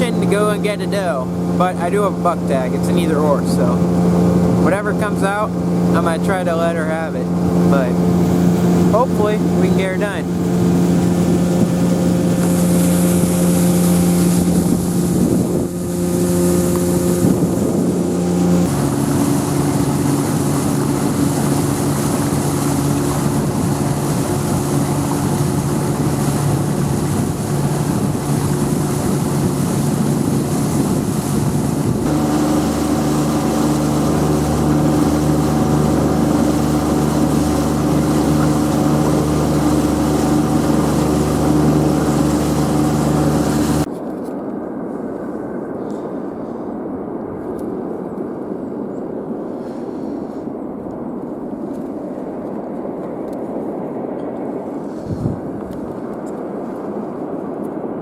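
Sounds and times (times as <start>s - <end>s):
outboard motor running: 0.0s - 43.9s
wind on microphone: 0.0s - 58.0s.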